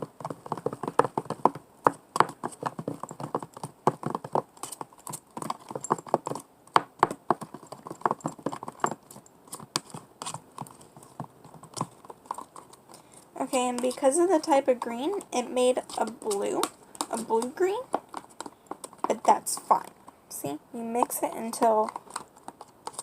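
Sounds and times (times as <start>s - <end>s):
slime stirred in a bowl: 12.4s - 18.5s.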